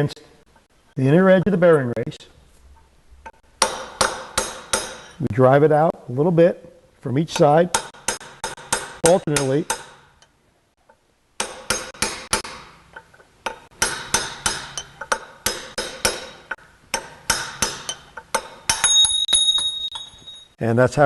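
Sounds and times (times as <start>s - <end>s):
hammer striking metal punch: 3.6s - 5.2s, 7.4s - 10.1s, 11.4s - 12.8s, 13.5s - 20.4s
metal ringing: 3.6s - 5.2s, 11.4s - 20.6s.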